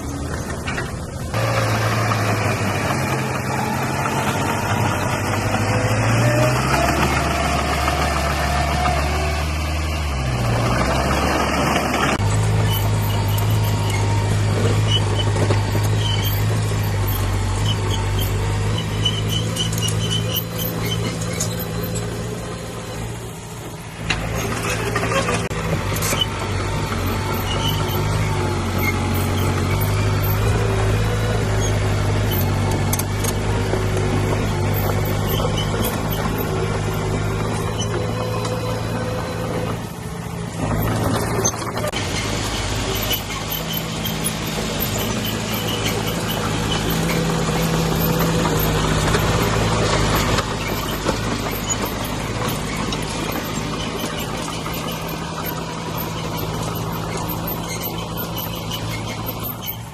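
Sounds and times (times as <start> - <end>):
heavy diesel engines under load: 0.0 - 59.9.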